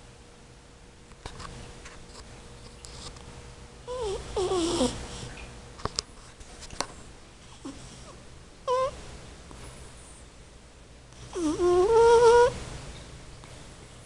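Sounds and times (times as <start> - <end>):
cat snoring: 3.9 - 5.3, 7.6 - 9.0, 11.2 - 12.6.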